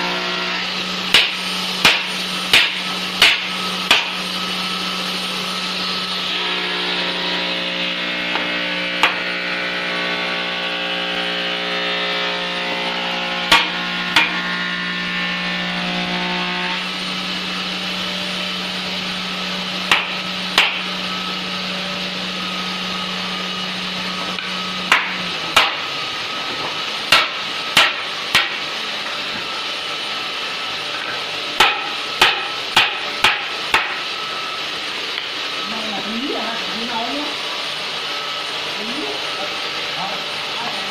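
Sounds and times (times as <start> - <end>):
machine hum: 0.0 - 40.9
hammer knocking on wood: 31.6 - 34.0.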